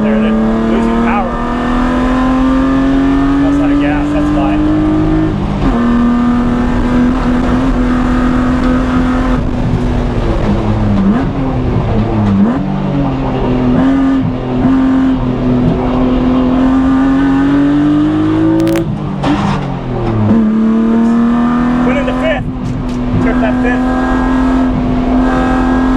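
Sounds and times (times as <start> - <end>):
car engine pulling hard: 0.0 - 25.9.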